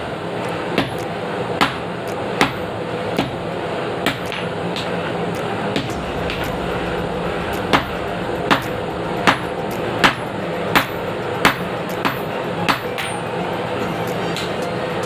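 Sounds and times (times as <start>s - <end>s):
steady mechanical hum: 0.0s - 15.0s
hammer striking metal on anvil: 5.8s - 13.2s.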